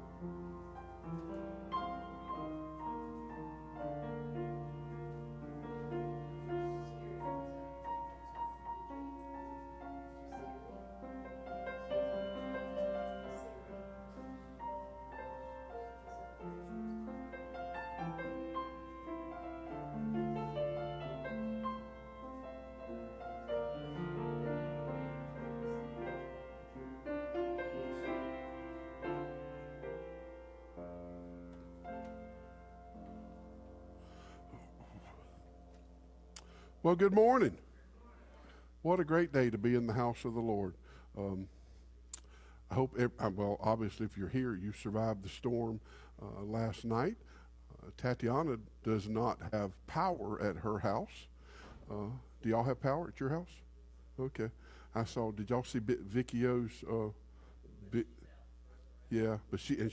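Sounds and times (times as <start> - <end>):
slow keyboard music: 0.0 - 37.5
low steady hum: 0.0 - 59.9.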